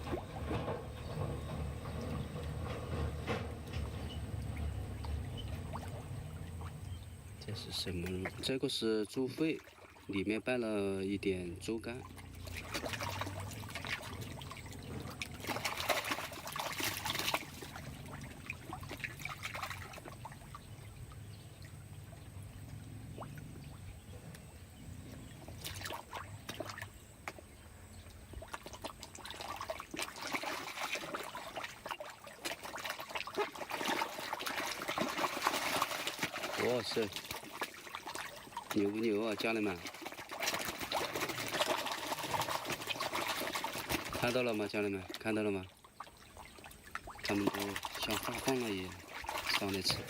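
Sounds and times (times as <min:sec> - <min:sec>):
water trickling and splashing: 0:00.0 - 0:50.0
fish rising with clicks and slaps: 0:11.9 - 0:50.0.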